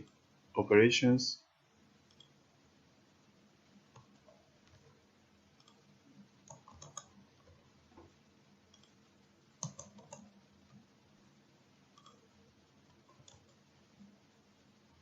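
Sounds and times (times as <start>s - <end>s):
faint computer clicking: 0.0s - 0.3s, 2.0s - 2.4s, 3.8s - 10.9s, 11.9s - 14.2s.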